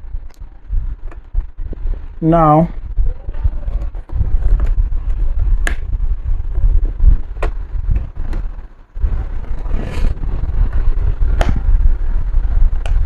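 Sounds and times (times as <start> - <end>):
low rumble: 0.0 - 13.0
short scrape: 9.6 - 10.3.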